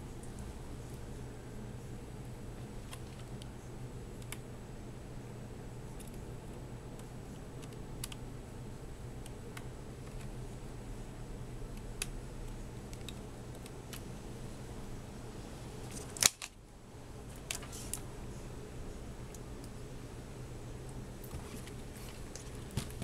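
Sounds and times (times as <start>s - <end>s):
steady low hum: 0.0s - 23.0s
clicks of laptop parts handled: 15.9s - 16.6s.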